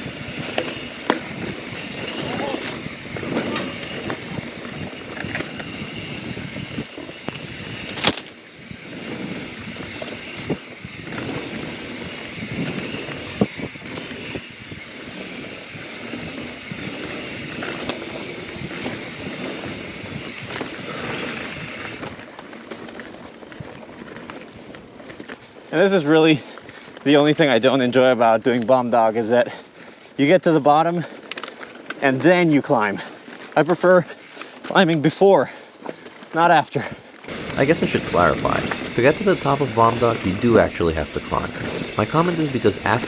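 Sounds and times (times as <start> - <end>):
bike rattling: 0.0 - 43.0
bike tyre and wind rush: 0.0 - 43.0.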